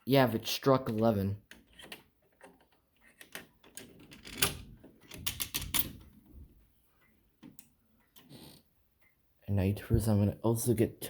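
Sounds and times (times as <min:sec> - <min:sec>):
handling clicks and knocks: 0:00.8 - 0:06.3.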